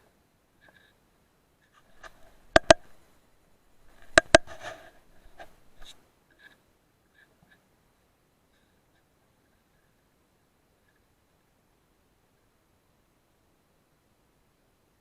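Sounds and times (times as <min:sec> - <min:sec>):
sharp clicks: 0:02.0 - 0:03.0, 0:04.0 - 0:04.5.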